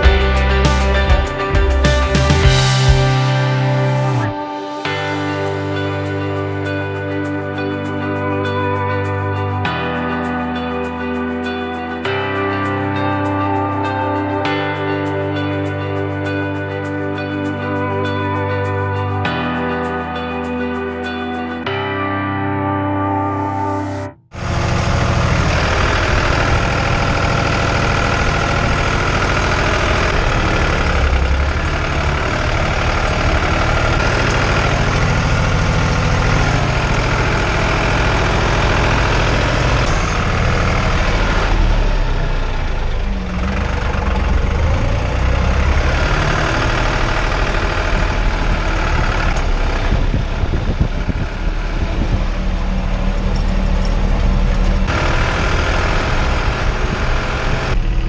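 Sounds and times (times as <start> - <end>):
tractor engine running: 24.4 - 58.0.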